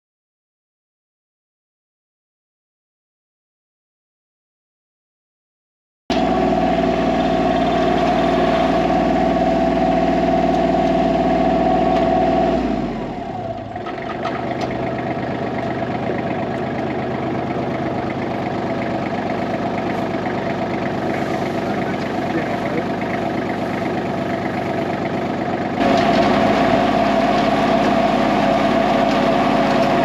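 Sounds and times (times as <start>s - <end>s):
diesel tractor engine running: 6.1s - 30.0s
steady whine: 14.6s - 30.0s.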